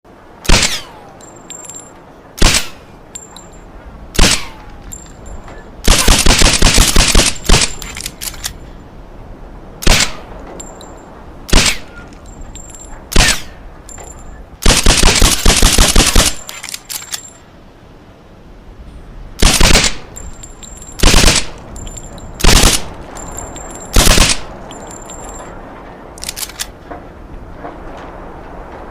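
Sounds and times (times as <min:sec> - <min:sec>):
suppressed pistol shots: 0:00.4 - 0:01.0, 0:02.4 - 0:02.8, 0:04.2 - 0:04.6, 0:05.9 - 0:08.0, 0:09.8 - 0:10.2, 0:11.5 - 0:12.0, 0:13.1 - 0:13.5, 0:14.6 - 0:17.2, 0:19.4 - 0:20.1, 0:21.0 - 0:21.6, 0:22.4 - 0:22.9, 0:24.0 - 0:24.5.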